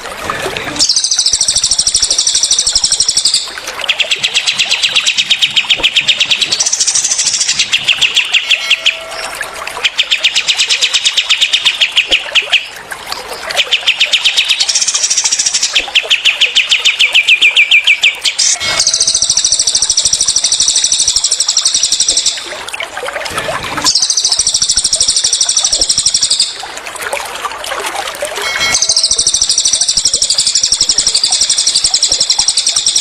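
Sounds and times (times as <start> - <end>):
faint trickling water: 0.0 - 33.0
birds singing rapid trills: 0.8 - 12.7, 13.5 - 22.4, 23.9 - 26.6, 28.4 - 33.0.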